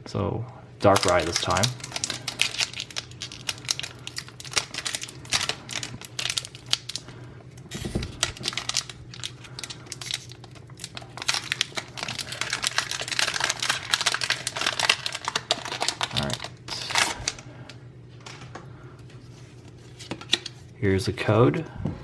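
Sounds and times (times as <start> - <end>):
foil wrapper crinkling: 0.8 - 18.4.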